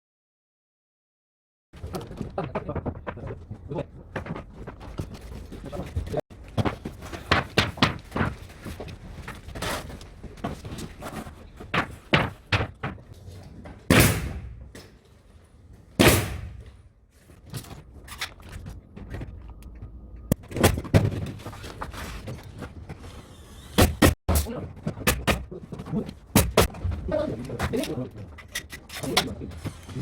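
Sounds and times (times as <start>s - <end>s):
carpentry knocks and clatter: 1.8s - 15.2s, 23.8s - 30.0s
loud bangs ringing in a room: 13.9s - 14.8s, 16.0s - 16.9s.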